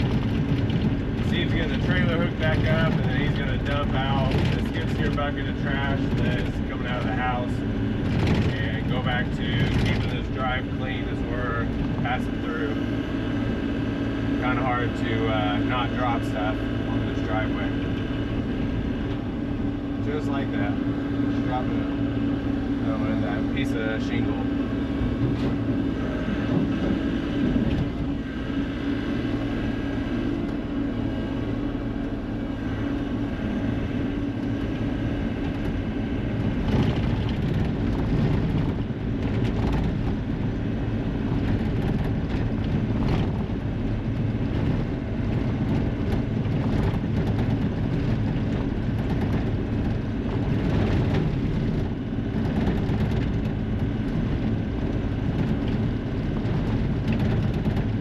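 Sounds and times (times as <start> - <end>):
skid steer engine running: 0.0 - 58.0.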